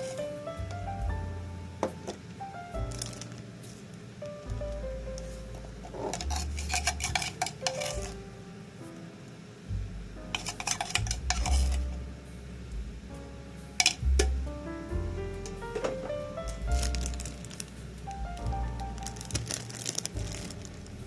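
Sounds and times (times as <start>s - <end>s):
background music: 4.5s - 21.0s.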